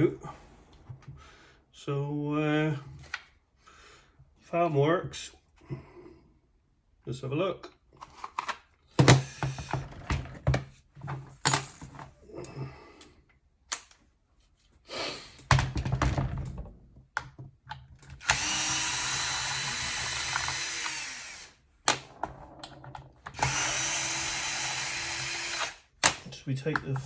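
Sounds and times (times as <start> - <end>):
cordless screwdriver motor: 18.2 - 21.6, 23.4 - 25.8.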